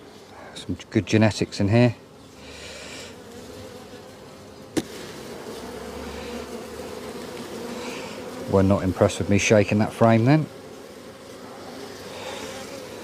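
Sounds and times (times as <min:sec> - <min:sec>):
bees buzzing: 0:00.0 - 0:13.0
sharp knock: 0:04.8 - 0:05.0.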